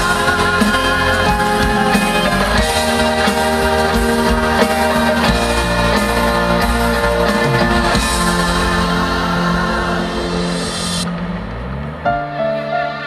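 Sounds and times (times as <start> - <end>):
live band sustained chords: 0.0 - 13.0.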